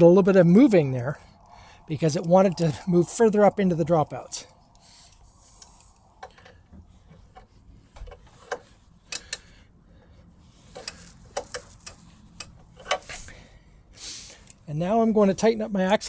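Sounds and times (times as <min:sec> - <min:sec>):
bike wheel shifting: 0:04.8 - 0:13.5
wrench clicking on metal: 0:08.5 - 0:09.5.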